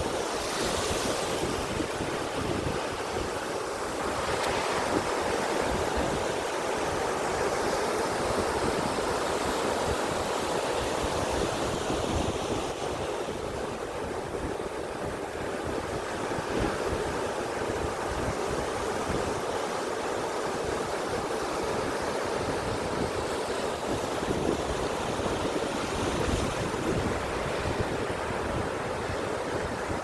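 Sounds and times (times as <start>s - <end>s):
sea surf washing ashore: 0.0s - 30.0s
wind buffeting microphone: 20.6s - 30.0s.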